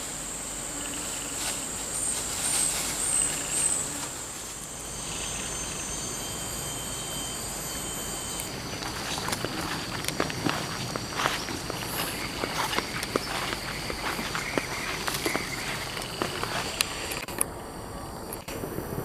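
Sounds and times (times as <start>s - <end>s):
insects droning: 0.0s - 19.0s
footsteps on leaf litter: 1.2s - 5.4s, 8.4s - 17.2s.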